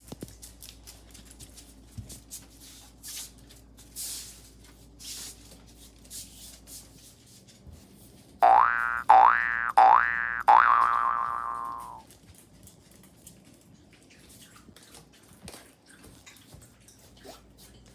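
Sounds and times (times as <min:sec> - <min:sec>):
dogs scuffling on floor: 0:00.1 - 0:08.3
springy boing sound effect: 0:08.4 - 0:12.0.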